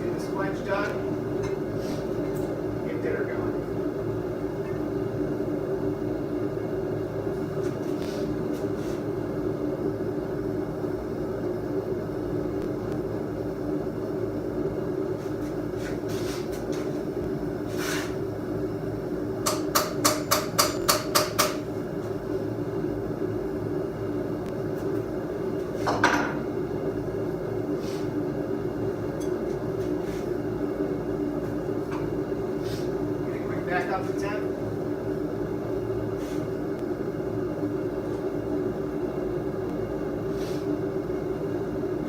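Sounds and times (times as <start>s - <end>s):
steady machine hum: 0.0s - 42.0s
hammer strikes on steel: 19.5s - 21.6s.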